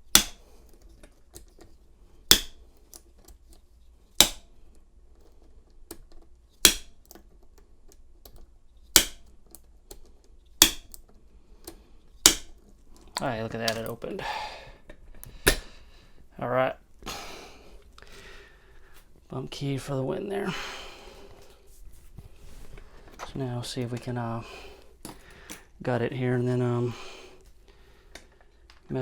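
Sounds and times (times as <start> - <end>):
sharp taps on bump key in padlock: 0.0 - 0.4, 6.6 - 7.2, 8.2 - 10.0, 10.6 - 11.0.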